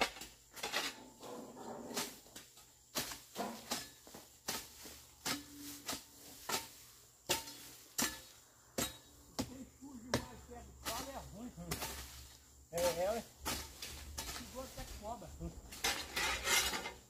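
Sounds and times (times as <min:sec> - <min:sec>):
hoe chopping into soil: 0:01.9 - 0:15.1.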